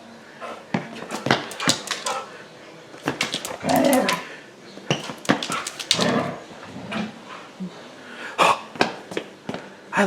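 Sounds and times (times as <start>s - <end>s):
sharp knocks and scuffs: 1.1s - 2.3s, 3.0s - 4.2s, 4.9s - 6.3s.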